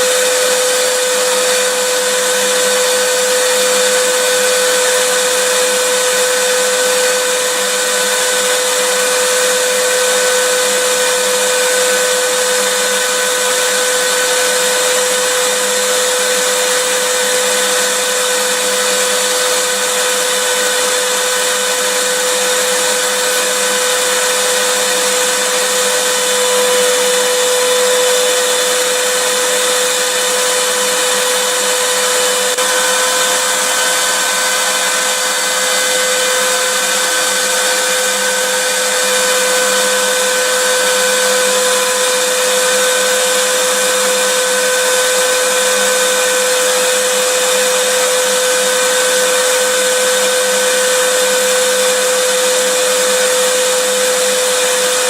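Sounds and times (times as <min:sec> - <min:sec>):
vacuum cleaner motor running: 0:00.0 - 0:55.0.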